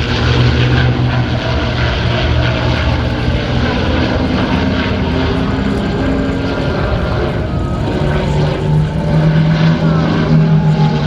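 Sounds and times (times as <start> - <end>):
piston aircraft engines droning: 0.0 - 11.0.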